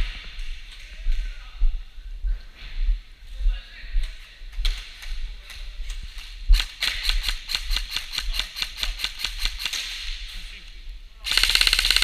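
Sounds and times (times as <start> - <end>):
airsoft gun firing: 6.5 - 10.2, 11.3 - 12.0.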